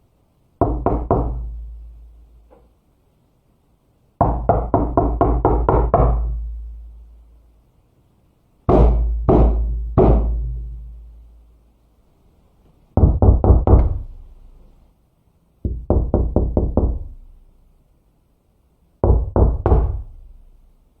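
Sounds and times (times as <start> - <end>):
knocking on a door: 0.6 - 1.6, 4.2 - 6.4, 8.7 - 10.6, 13.0 - 14.1, 15.6 - 17.2, 19.0 - 20.2.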